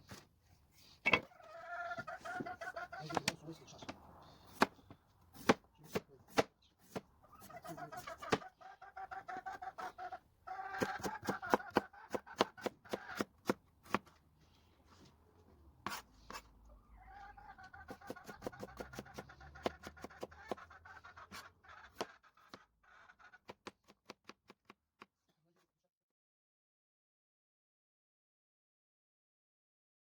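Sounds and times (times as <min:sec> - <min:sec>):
hens clucking: 0:01.1 - 0:04.7, 0:07.2 - 0:13.4, 0:16.5 - 0:23.6
knife chopping on cutting board: 0:04.5 - 0:04.8, 0:05.4 - 0:07.0, 0:10.8 - 0:14.1, 0:15.8 - 0:16.4.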